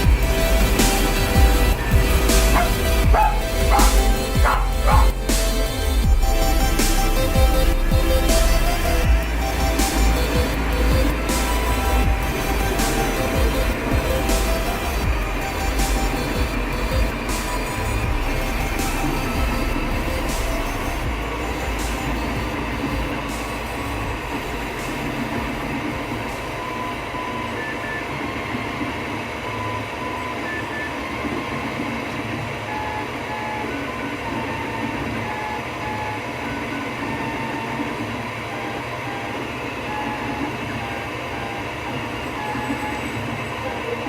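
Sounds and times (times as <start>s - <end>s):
stepper motor whines: 0.0s - 31.7s
printer fans and motors humming: 0.0s - 44.0s.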